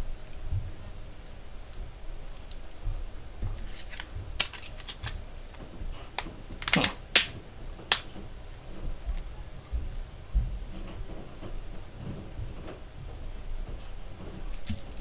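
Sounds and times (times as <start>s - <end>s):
plastic phone clicks and snaps: 3.7s - 5.2s, 6.2s - 8.1s.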